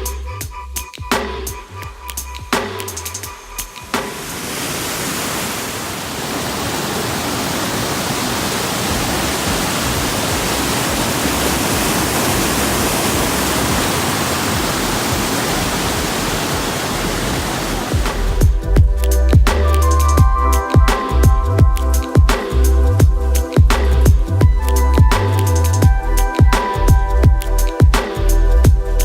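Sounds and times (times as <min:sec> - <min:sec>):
beat-driven music: 0:00.0 - 0:04.3, 0:16.0 - 0:29.0
waterfall rushing: 0:03.8 - 0:18.6.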